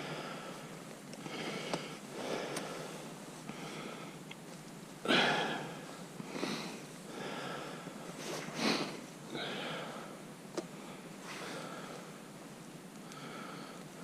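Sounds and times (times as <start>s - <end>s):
person sniffing through nose: 8.2s - 9.0s.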